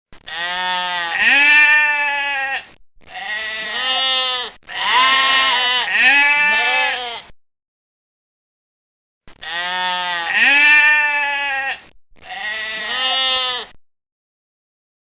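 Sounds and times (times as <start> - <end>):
goat bleating: 0.2 - 7.3, 9.4 - 13.8.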